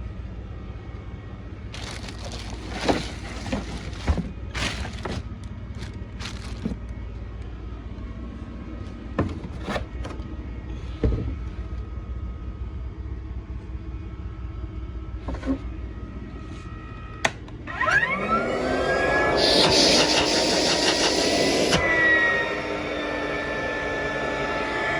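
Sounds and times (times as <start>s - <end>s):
low steady hum: 0.0s - 17.7s
vacuum cleaner motor whining: 1.8s - 5.3s, 17.7s - 24.9s.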